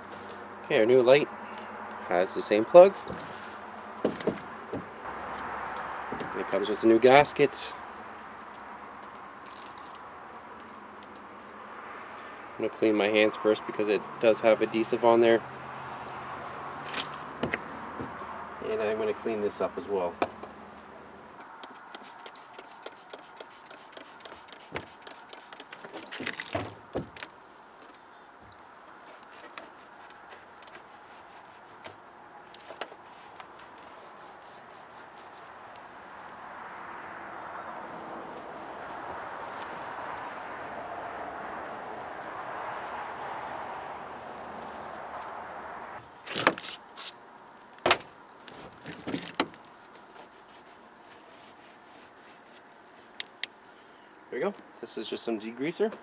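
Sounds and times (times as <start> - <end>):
crickets chirping: 0.0 - 56.0
rag rubbing: 21.9 - 26.9, 46.3 - 47.2
surface being wiped: 22.0 - 25.6.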